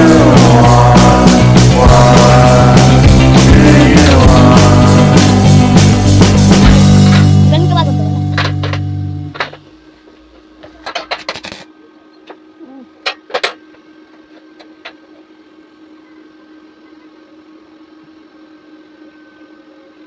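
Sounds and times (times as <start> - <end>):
steady low hum: 0.0 - 20.0
sharp knocks and clicks: 8.3 - 9.7.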